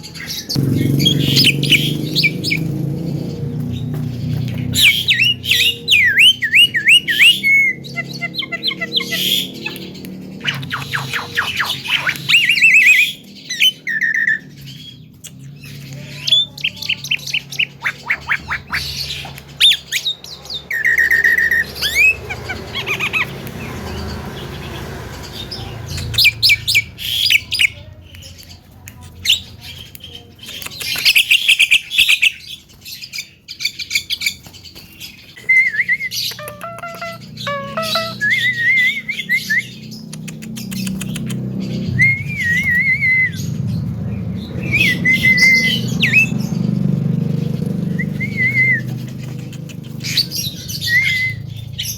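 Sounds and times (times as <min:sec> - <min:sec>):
myna bird calling: 0:00.0 - 0:27.8, 0:29.2 - 0:51.9.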